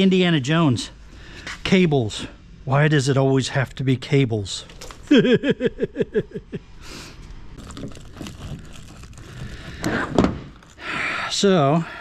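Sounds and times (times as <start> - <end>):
cable clatter: 7.6 - 10.8
cables rustling when handled: 7.6 - 10.9.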